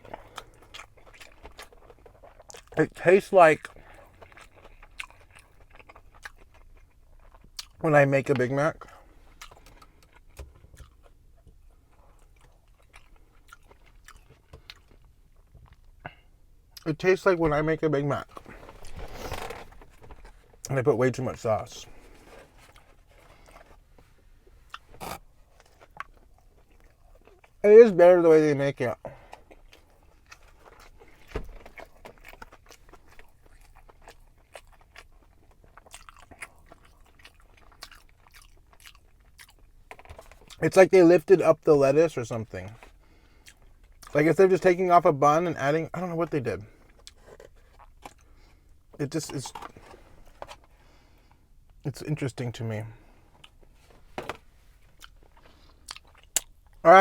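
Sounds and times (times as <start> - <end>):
faint chewing: 0.0 - 16.9, 21.5 - 27.6, 29.0 - 40.7, 42.6 - 44.2, 52.9 - 56.9.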